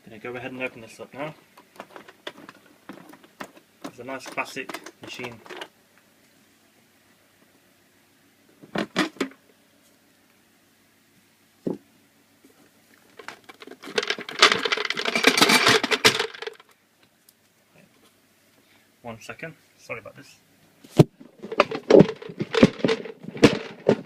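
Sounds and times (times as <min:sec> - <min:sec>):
metallic rattling and clattering: 0:01.6 - 0:05.7, 0:13.1 - 0:16.7, 0:21.2 - 0:24.0
sharp clicks and knocks: 0:01.6 - 0:05.7, 0:21.0 - 0:24.0.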